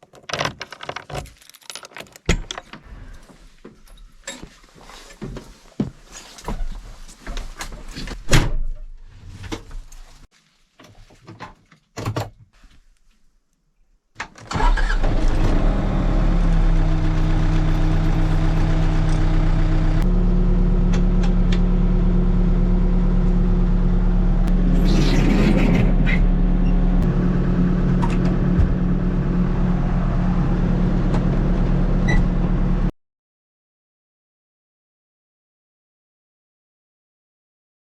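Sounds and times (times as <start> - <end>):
diesel engine running: 14.6 - 32.9.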